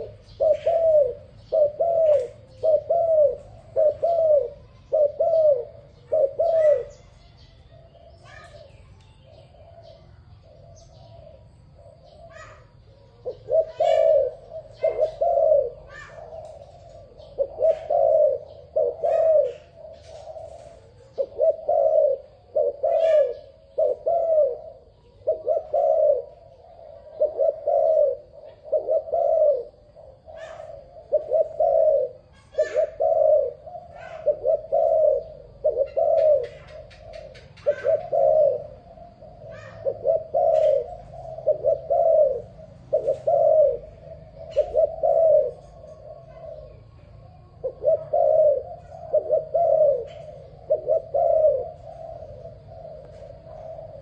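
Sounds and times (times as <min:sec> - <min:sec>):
dove cooing: 0:00.0 - 0:54.0
small birds chirping: 0:00.0 - 0:54.0.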